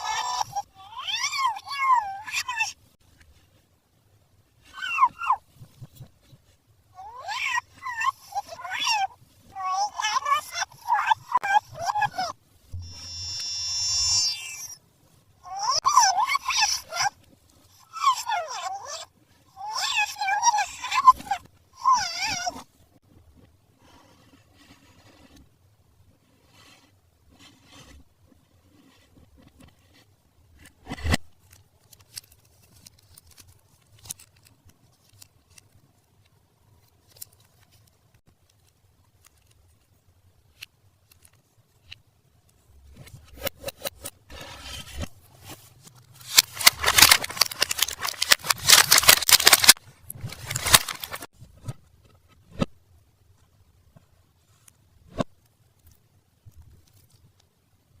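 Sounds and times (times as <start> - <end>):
plastic crinkling: 45.4 - 51.3
toys clicking and tapping: 46.3 - 49.8.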